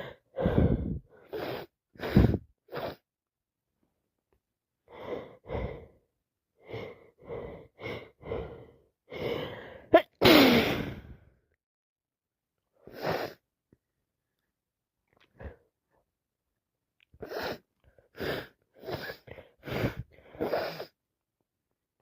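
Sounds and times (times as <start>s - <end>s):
woman catching breaths: 0.0s - 2.5s
woman sneezing loudly: 9.9s - 11.0s.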